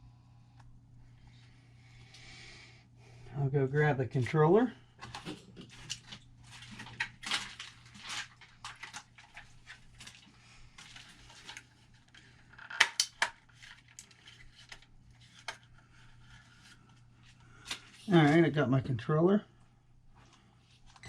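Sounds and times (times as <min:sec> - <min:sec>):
steady low hum: 0:00.0 - 0:12.5
objects clattering and rustling: 0:05.0 - 0:18.4.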